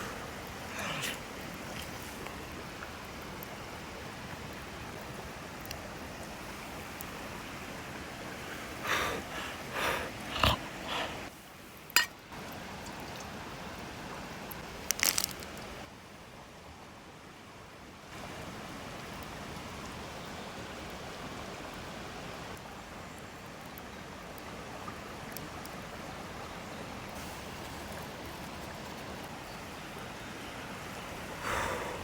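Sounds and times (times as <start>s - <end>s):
mountain stream rushing: 0.0s - 16.4s, 24.4s - 32.0s.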